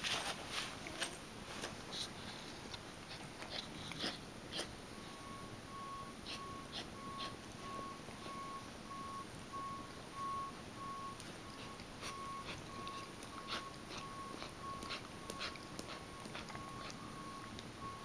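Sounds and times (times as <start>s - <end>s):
dog coughing: 3.1s - 4.8s, 6.2s - 7.4s, 12.0s - 16.9s
faint electronic beep: 5.0s - 18.0s.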